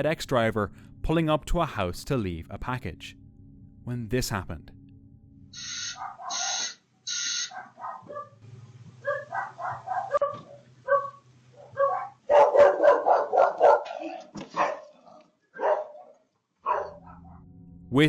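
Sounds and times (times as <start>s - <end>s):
low steady hum: 0.0s - 13.4s, 16.7s - 18.0s
dog barking: 5.8s - 6.8s, 7.4s - 8.4s, 9.0s - 17.4s.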